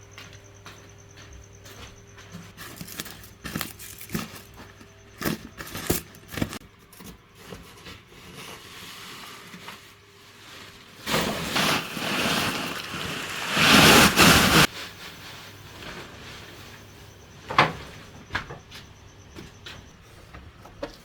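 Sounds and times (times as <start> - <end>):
objects being handled: 2.4 - 14.7.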